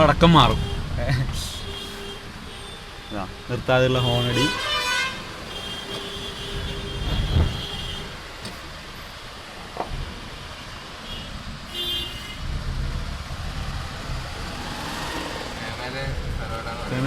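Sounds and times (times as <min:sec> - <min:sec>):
vehicle horns honking: 0:00.0 - 0:08.6, 0:11.0 - 0:12.6
vehicle engines running: 0:05.3 - 0:17.0.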